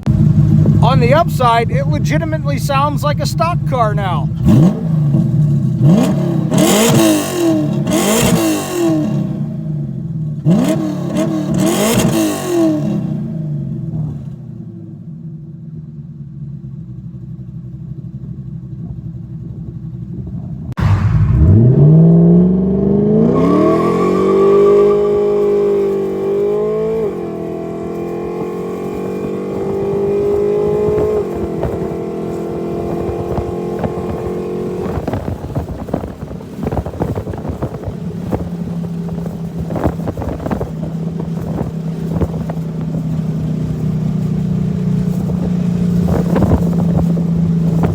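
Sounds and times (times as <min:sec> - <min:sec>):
exhaust crackles: 0:00.0 - 0:13.2, 0:20.6 - 0:47.9
loud vee-eight engine revving: 0:00.1 - 0:09.8, 0:10.4 - 0:13.5, 0:20.8 - 0:35.9.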